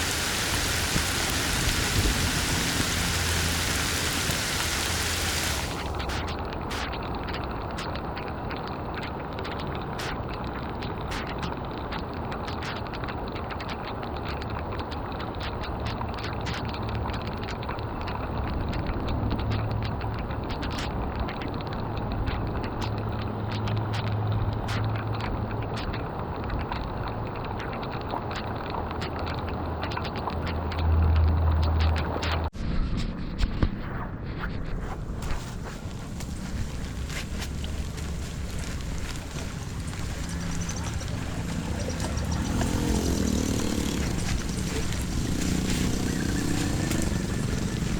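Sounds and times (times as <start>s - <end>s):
rushing water: 0.0s - 10.1s, 35.0s - 47.9s
small crackles and clicks: 0.0s - 47.9s.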